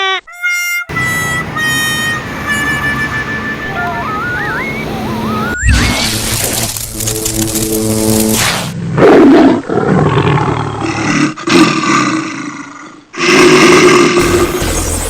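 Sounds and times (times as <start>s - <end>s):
horn-like tone: 0.0s - 6.3s
loud roars: 8.9s - 14.7s.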